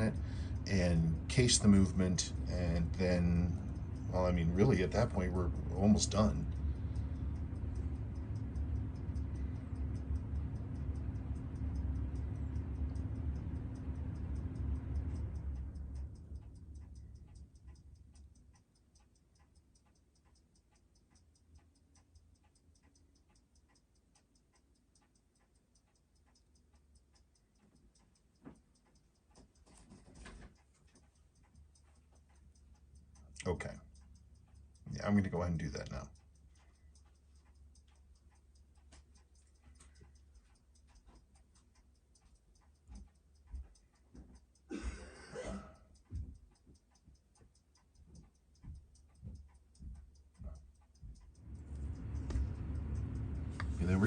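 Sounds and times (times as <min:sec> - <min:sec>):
low rumbling noise: 0:00.0 - 0:18.2, 0:51.2 - 0:54.0
rapid regular ticking: 0:00.0 - 0:54.0.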